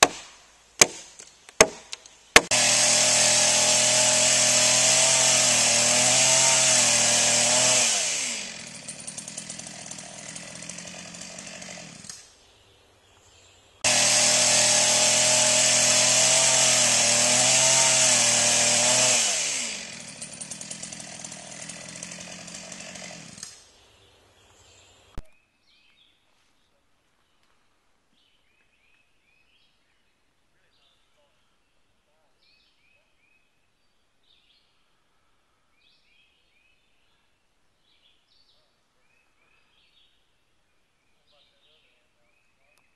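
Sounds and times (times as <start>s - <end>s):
chainsaw cutting and idling: 0.0s - 12.5s, 13.8s - 23.8s.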